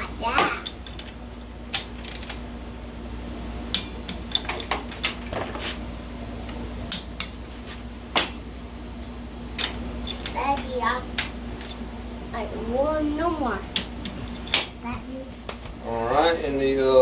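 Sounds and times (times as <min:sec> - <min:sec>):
steady low hum: 0:00.0 - 0:17.0
metal tools clinking: 0:00.4 - 0:02.4.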